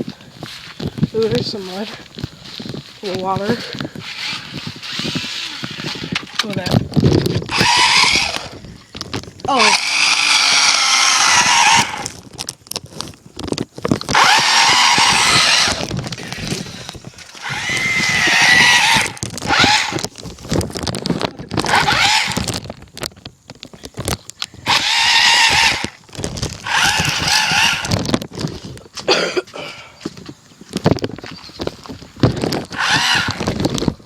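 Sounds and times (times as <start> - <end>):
toy car electric motor whining: 4.0 - 8.6, 9.5 - 12.2, 14.1 - 20.2, 21.5 - 22.6, 24.5 - 28.1, 32.4 - 34.0.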